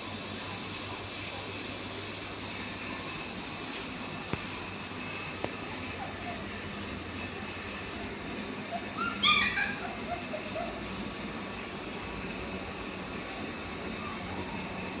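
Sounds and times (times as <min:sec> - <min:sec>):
puppy yelping: 0:08.7 - 0:10.8.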